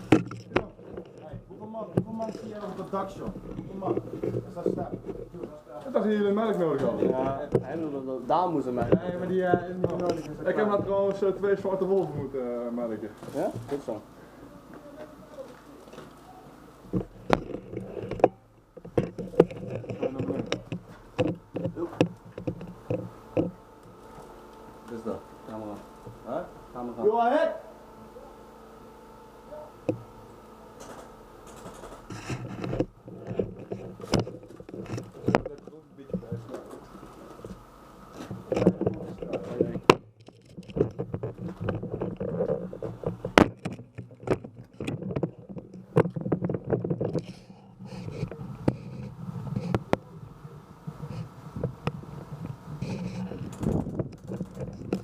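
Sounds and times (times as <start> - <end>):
gear clicks and knocks: 0.0 - 5.6, 16.9 - 26.9, 30.8 - 50.1, 50.9 - 55.0
rustling: 0.0 - 55.0
clicks and knocks: 16.9 - 23.6, 38.2 - 47.4.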